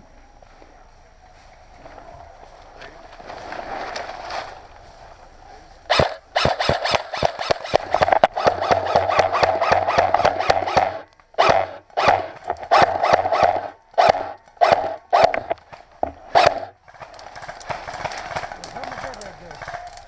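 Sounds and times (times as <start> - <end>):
whining motor: 5.9 - 16.8
airsoft gun firing clicks: 5.9 - 19.1.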